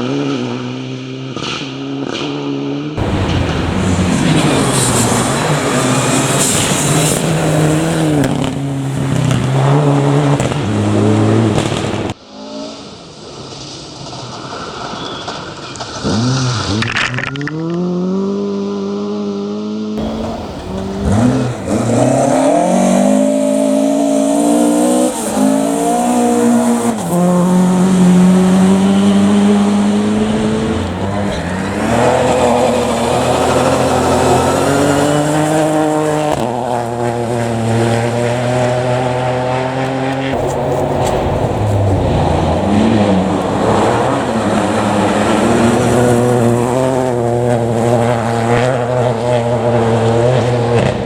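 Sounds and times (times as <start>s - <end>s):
rally car engines revving: 0.0s - 12.2s, 15.8s - 51.0s.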